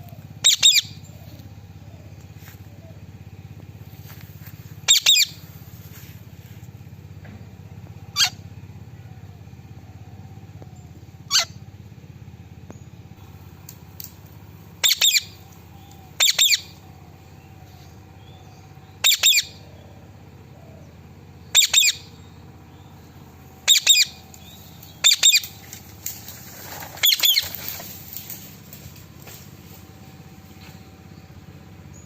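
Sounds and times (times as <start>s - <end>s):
parrot calling: 0.4s - 1.4s, 4.8s - 5.4s, 8.1s - 8.4s, 11.3s - 11.6s, 14.8s - 16.8s, 19.0s - 19.8s, 21.5s - 22.2s, 23.6s - 25.6s, 27.0s - 27.7s.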